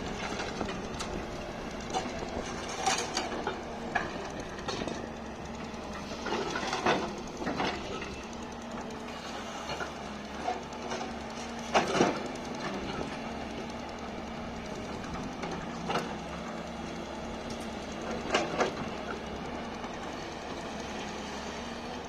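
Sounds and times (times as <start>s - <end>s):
diesel engine running: 0.0s - 22.0s
metal clanking and scraping on rock: 1.9s - 4.9s.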